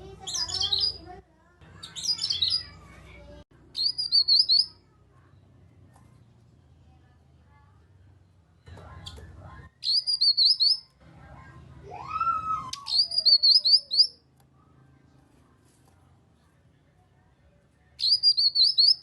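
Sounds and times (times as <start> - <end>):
bird high sharp chirping: 0.2 - 1.1, 1.7 - 2.9, 3.8 - 4.8, 9.8 - 10.9, 12.7 - 14.2, 18.0 - 19.0.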